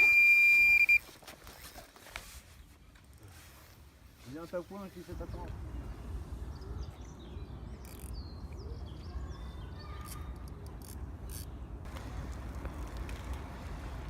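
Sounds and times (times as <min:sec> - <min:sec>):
small birds chirping: 0:04.7 - 0:11.8.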